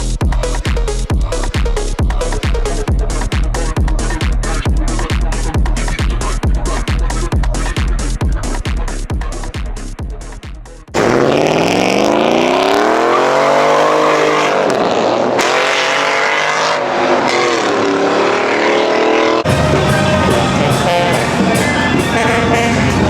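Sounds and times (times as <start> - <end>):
music: 0.0 - 11.0, 19.4 - 23.0
car engine revving: 10.9 - 23.0.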